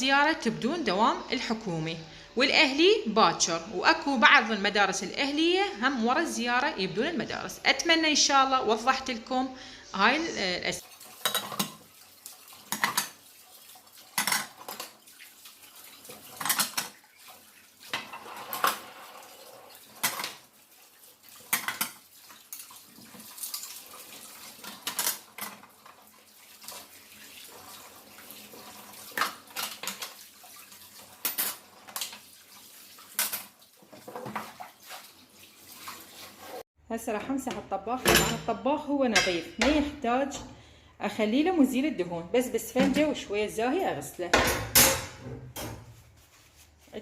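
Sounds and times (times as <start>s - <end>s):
dishes and cutlery clinking: 10.8s - 11.8s, 14.1s - 14.9s, 31.2s - 32.2s, 38.0s - 39.9s, 44.3s - 45.9s.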